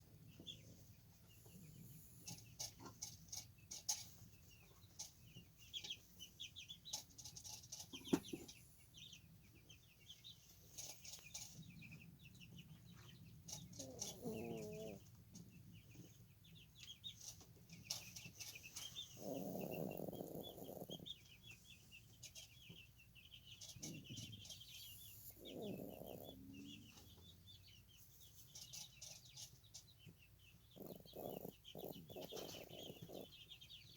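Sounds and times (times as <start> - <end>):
faint bird chirping: 0.0 - 33.9
puppy snoring: 13.8 - 15.0, 19.0 - 21.2, 24.7 - 26.9, 30.7 - 33.4
puppy soft dream noises: 18.8 - 22.1, 24.6 - 27.3, 30.7 - 33.9.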